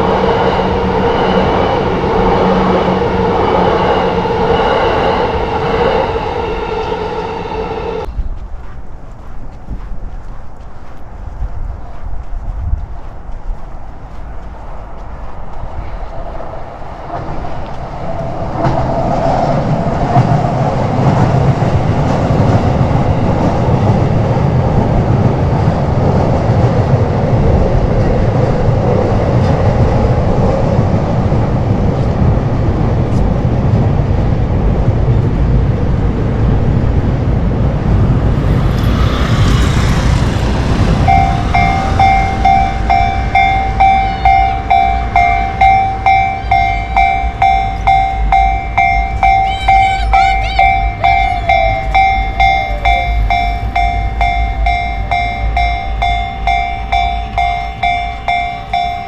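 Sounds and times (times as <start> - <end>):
electric train rumbling past: 0.0 - 10.2, 10.8 - 59.0
train wheels clattering on rails: 0.0 - 59.0
level crossing warning bell: 39.7 - 59.0.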